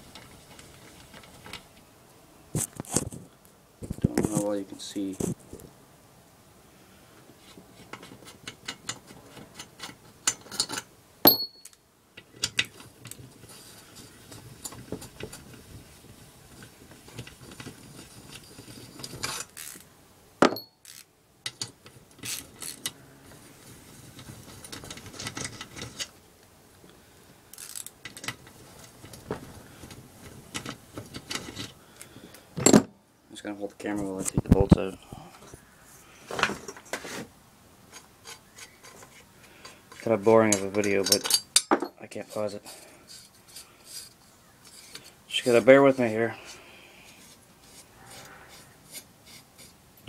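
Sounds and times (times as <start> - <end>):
hand tools clinking on metal: 39.9 - 44.0.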